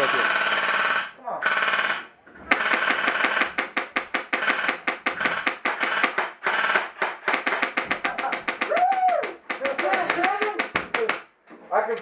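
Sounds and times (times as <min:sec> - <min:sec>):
airsoft gun firing bursts: 0:00.0 - 0:11.3.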